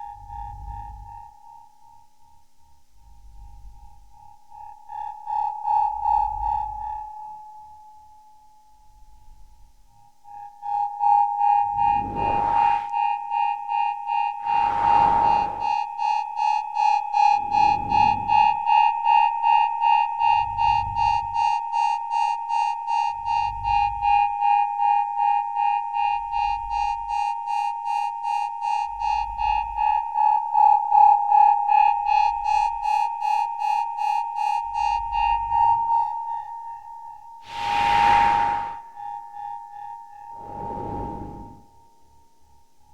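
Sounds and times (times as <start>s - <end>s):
swooshing sweeps: 11.7s - 13.0s, 14.4s - 15.8s, 37.4s - 38.9s, 40.4s - 41.7s
pulsing electronic tone: 11.8s - 12.9s, 14.4s - 15.8s, 37.4s - 38.9s, 40.4s - 41.6s.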